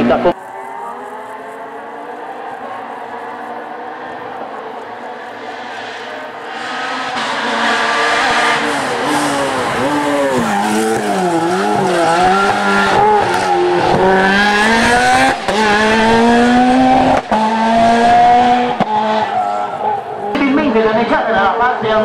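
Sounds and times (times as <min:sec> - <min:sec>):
race car engine at high revs: 0:00.0 - 0:22.0.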